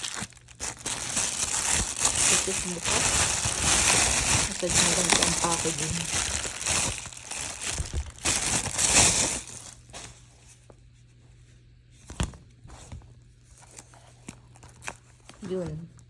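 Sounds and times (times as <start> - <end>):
packaging crinkling and tearing: 0.0 - 10.2, 13.4 - 15.4.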